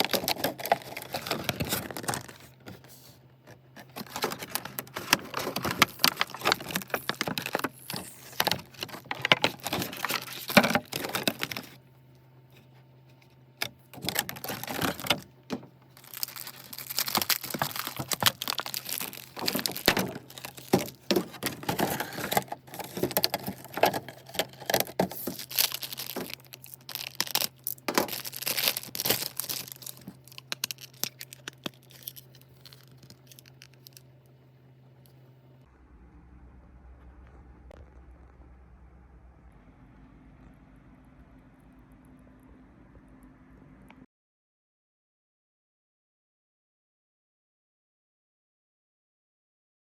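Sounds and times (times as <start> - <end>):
packaging crinkling and tearing: 0.0 - 11.8, 13.6 - 15.3, 15.9 - 34.1
low hum: 0.0 - 44.1.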